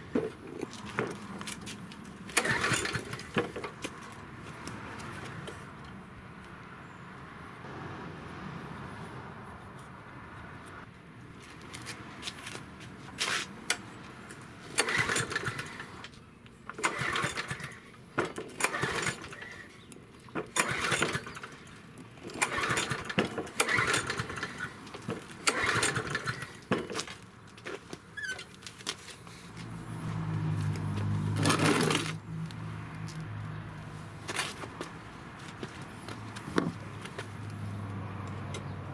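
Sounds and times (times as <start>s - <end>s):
lawn mower engine running: 0.0s - 4.1s, 14.3s - 16.1s, 16.7s - 32.3s
lawn mower engine cranking: 0.0s - 4.2s, 13.2s - 32.6s
recoil cord yanks: 16.7s - 19.8s, 22.2s - 29.2s.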